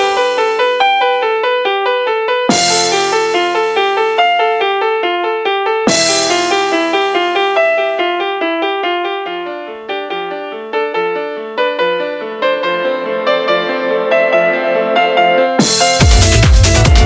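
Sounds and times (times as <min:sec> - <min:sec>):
electronic dance music: 0:15.6 - 0:17.0.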